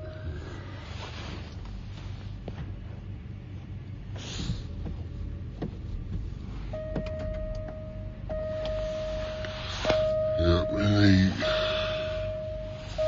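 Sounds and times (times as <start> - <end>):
car electronic warning beep: 6.6 - 13.0.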